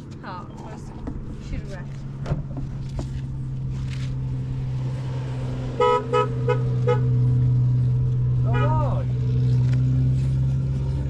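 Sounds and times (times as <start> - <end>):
horn toots: 5.8 - 7.4, 8.4 - 9.1.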